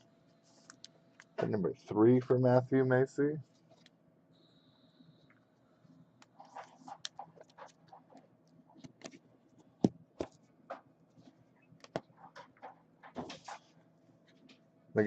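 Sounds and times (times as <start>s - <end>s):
trading cards being handled: 6.2s - 13.7s.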